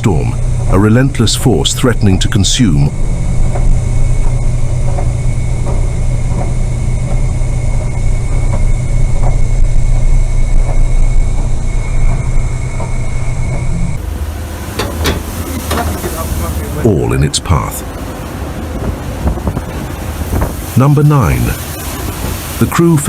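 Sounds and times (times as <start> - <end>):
knocks and creaks: 0.0 - 14.1
boat engine droning: 0.0 - 23.0
faint whine: 0.0 - 23.0.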